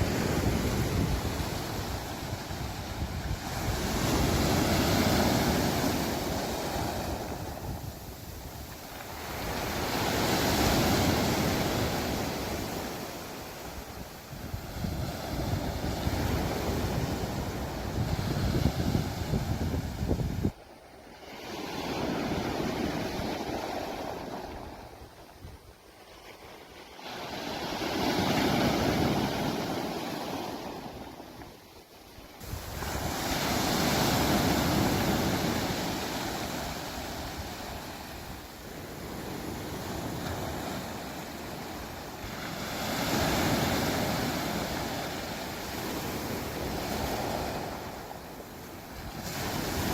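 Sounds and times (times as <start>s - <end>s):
wind buffeting microphone: 0.0s - 20.6s, 32.4s - 48.2s
sea waves washing onto shore: 0.0s - 25.2s, 26.1s - 49.9s.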